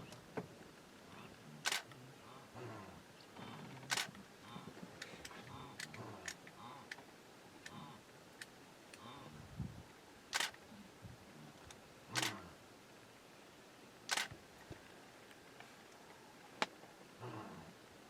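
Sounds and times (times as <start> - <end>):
faint low murmurs: 0.0 - 7.0, 8.9 - 13.5, 14.6 - 18.0
sharp clicks: 1.7 - 1.9, 3.8 - 4.2, 10.3 - 10.6, 12.2 - 12.4, 14.1 - 14.3.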